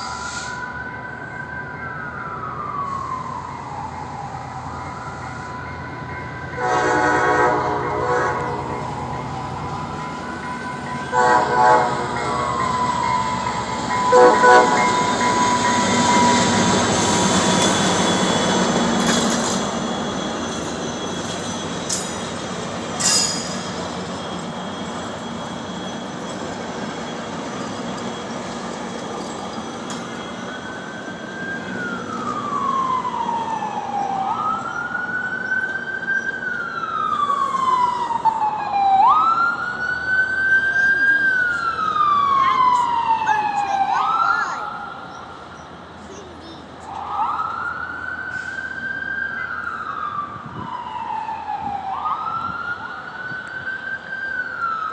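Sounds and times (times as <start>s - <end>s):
emergency vehicle siren wailing: 0.0s - 54.9s
train rumbling and rattling: 4.0s - 34.8s.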